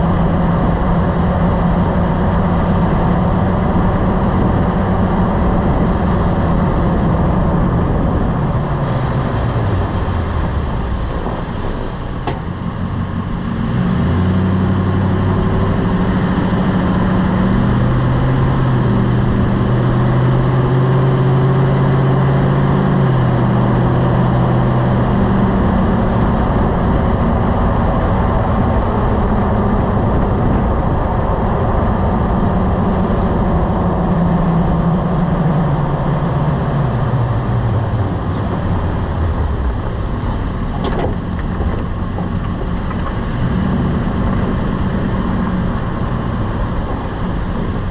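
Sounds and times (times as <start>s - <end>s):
road noise: 0.0s - 47.9s
truck engine: 0.0s - 47.9s
short knock under braking: 11.9s - 13.1s, 39.7s - 43.3s.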